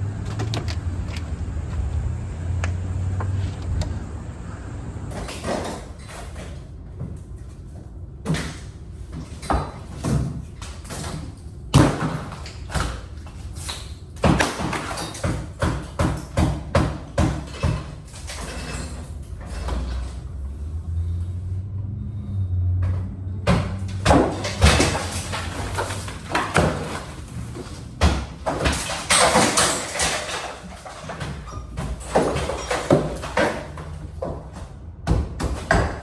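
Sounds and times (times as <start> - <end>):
steady low hum: 0.0 - 5.3
demolition knocks and clatter: 4.8 - 20.8, 22.8 - 36.0.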